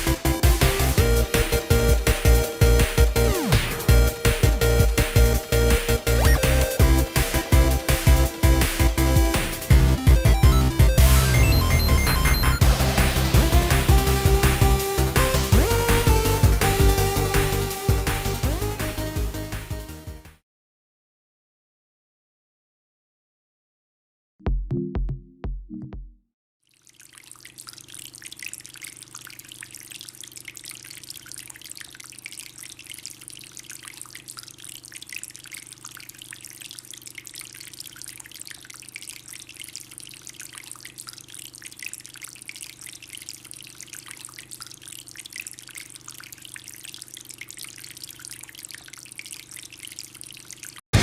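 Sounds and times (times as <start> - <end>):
fountain water trickling: 26.7 - 50.9.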